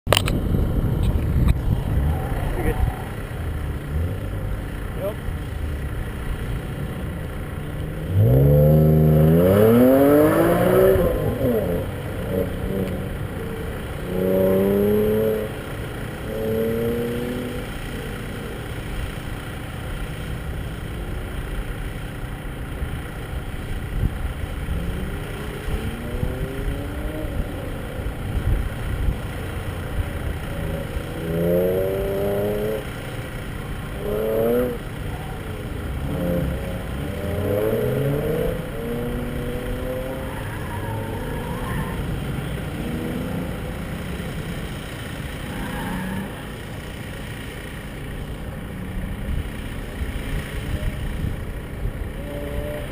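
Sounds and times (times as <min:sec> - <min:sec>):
wind rumbling on camera: 0:00.1 - 0:04.6
truck engine revving: 0:00.1 - 0:52.9.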